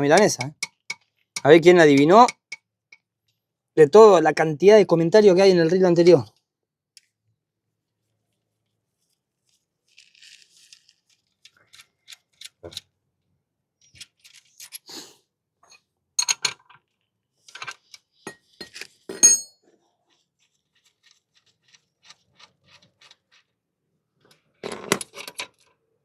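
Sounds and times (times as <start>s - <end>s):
metal tools clinking: 18.3s - 19.6s.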